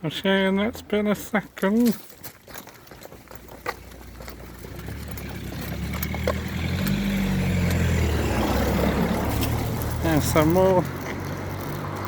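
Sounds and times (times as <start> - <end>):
vehicle engine approaching: 2.9 - 12.0.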